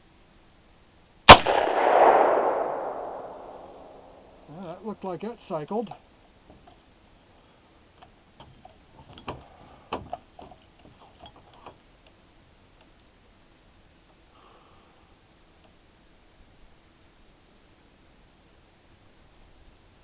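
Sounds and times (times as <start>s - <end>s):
light clicks and knocks: 8.0s - 12.2s.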